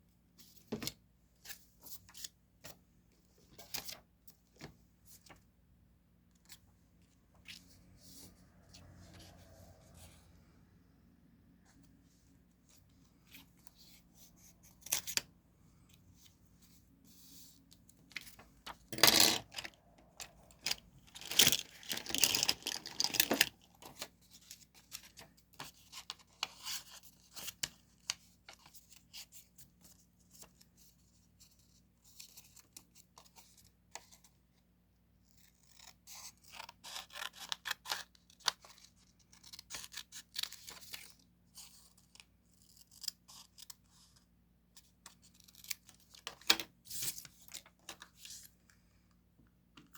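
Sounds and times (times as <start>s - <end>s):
scissors cutting paper: 35.3s - 41.0s.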